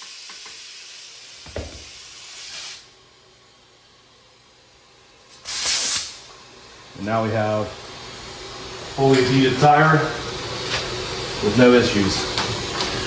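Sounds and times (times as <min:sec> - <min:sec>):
compressed air hissing into tire: 0:00.0 - 0:03.0, 0:05.3 - 0:06.2.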